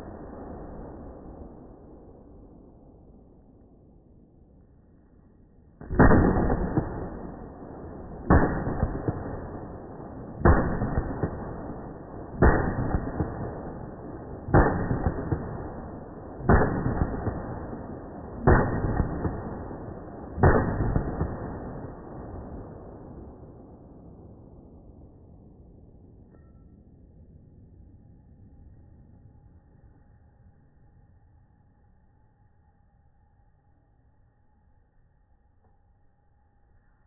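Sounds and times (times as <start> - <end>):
rifle shots: 5.8 - 23.4.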